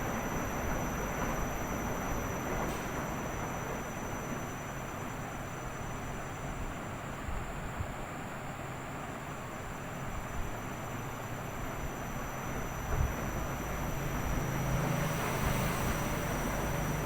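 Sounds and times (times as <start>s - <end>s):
washing machine running: 0.0s - 7.1s, 10.7s - 17.0s.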